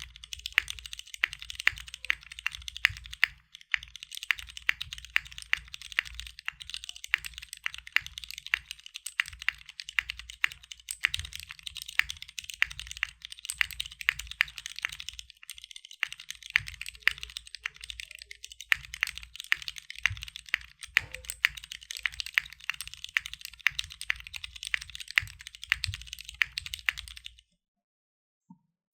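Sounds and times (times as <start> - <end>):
fast typing on mechanical keyboard: 0.0 - 27.4.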